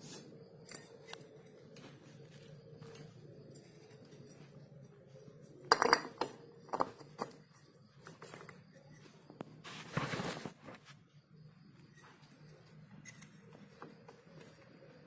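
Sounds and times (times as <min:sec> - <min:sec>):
metal parts and tools clinking: 0:00.1 - 0:09.4.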